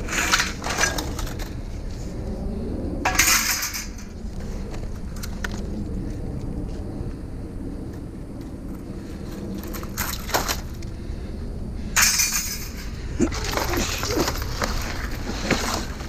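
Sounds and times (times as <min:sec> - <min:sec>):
steady low rumble: 0:00.0 - 0:16.0
scrap metal crashing: 0:03.1 - 0:04.1, 0:12.0 - 0:16.0.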